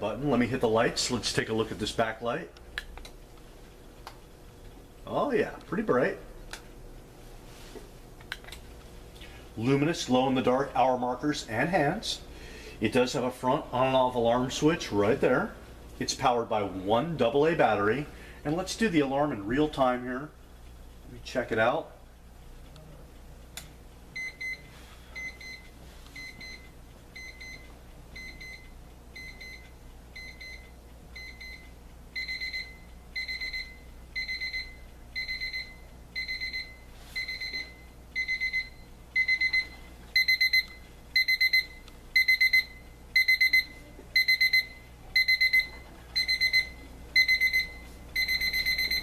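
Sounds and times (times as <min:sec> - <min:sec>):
alarm clock rapid beeps: 0:24.2 - 0:49.0.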